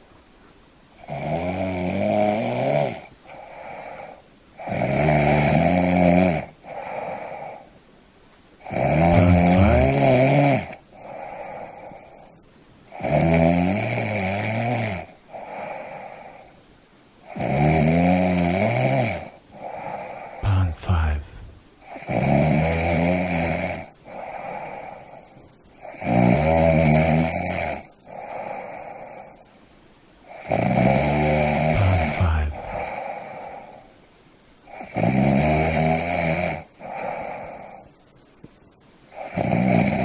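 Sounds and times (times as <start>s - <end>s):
person snoring: 1.0s - 7.6s, 8.6s - 12.2s, 12.9s - 16.5s, 17.3s - 25.2s, 30.3s - 33.8s, 39.2s - 40.0s.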